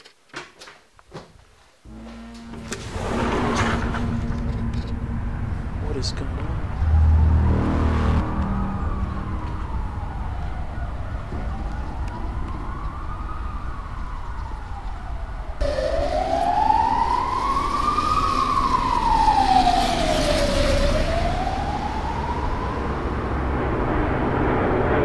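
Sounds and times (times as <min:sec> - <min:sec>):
low rumble: 0:01.9 - 0:20.7
siren-like wailing tone: 0:01.9 - 0:25.0.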